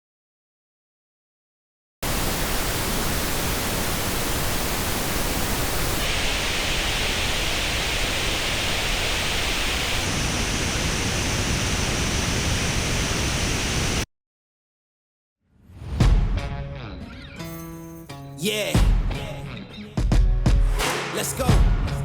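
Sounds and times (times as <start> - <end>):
pink noise test signal: 2.0 - 14.1.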